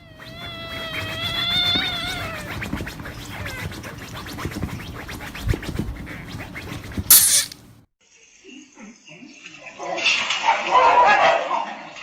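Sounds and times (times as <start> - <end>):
animal wailing call: 0.0 - 2.6.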